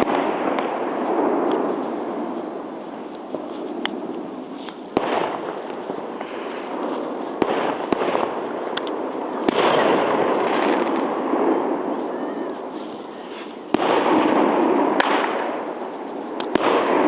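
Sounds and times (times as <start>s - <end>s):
fireworks bangs: 0.0s - 17.0s
fireworks crackling: 0.0s - 17.0s.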